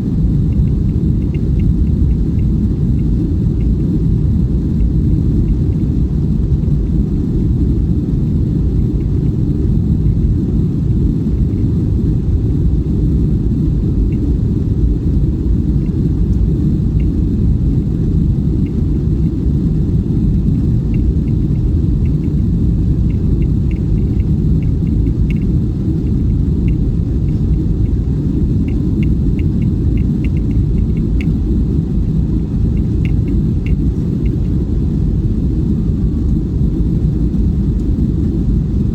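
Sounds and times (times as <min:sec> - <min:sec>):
aircraft cabin engine rumble: 0:00.0 - 0:38.9
faint light ticks and rattles: 0:00.4 - 0:07.0, 0:13.7 - 0:14.3, 0:15.0 - 0:35.2.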